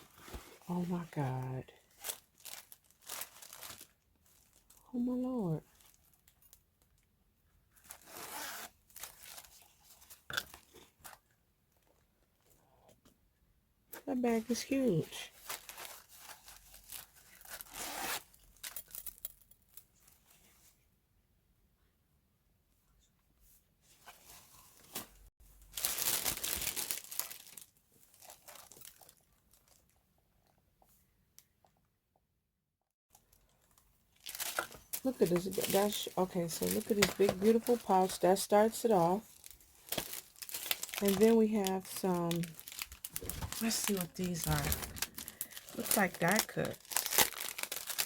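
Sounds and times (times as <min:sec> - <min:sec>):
plastic packaging crinkling: 0:00.1 - 0:04.9, 0:07.9 - 0:10.2, 0:15.3 - 0:19.2, 0:25.6 - 0:30.0, 0:33.2 - 0:48.0.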